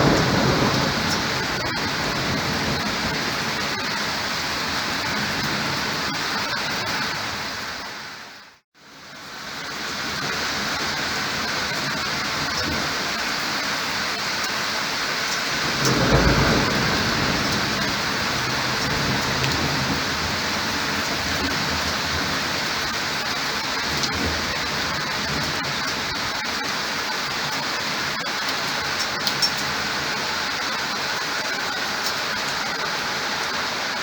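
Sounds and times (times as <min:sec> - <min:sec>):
thunder rolling: 0:00.0 - 0:06.1, 0:15.5 - 0:26.1
heavy rain: 0:00.0 - 0:34.0.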